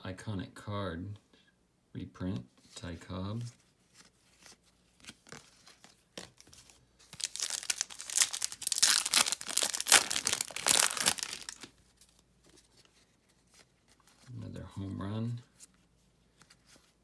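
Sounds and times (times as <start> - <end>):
foil wrapper crinkling and tearing: 7.1 - 11.7.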